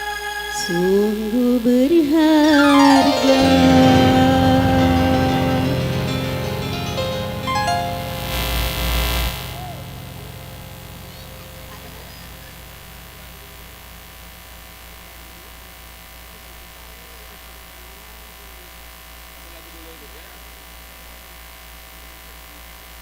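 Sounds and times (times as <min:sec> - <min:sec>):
electrical hum: 0:00.8 - 0:18.0
keyboard music final hit: 0:02.6 - 0:13.1
faint voices: 0:09.3 - 0:14.2.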